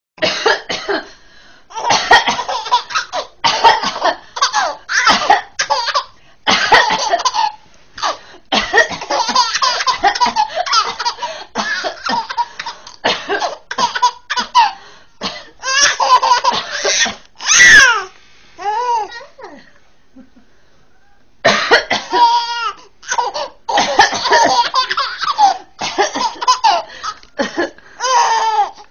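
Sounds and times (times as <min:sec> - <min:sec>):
baby coughing: 0:00.2 - 0:01.0, 0:01.7 - 0:18.1, 0:21.4 - 0:28.8
baby laughing: 0:01.7 - 0:03.3, 0:04.4 - 0:06.2, 0:09.0 - 0:12.6, 0:15.6 - 0:18.1, 0:22.2 - 0:28.8
baby squealing: 0:15.6 - 0:19.5.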